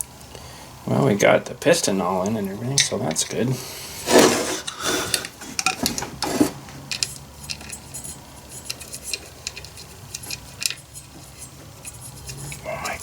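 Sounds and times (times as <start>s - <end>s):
metal parts and tools clinking: 4.1s - 13.0s.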